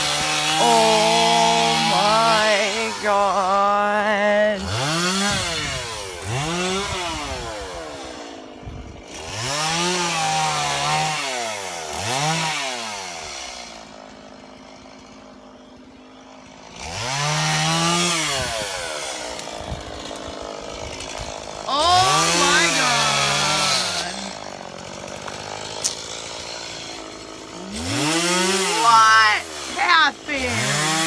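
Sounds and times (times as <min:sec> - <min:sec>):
chainsaw engine revving: 0:00.0 - 0:31.0.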